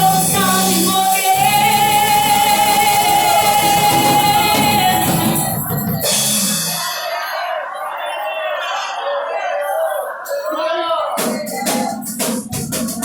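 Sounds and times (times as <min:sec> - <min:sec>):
percussion band playing: 0:00.0 - 0:07.8, 0:10.2 - 0:13.0
person singing with vibrato: 0:00.0 - 0:08.0.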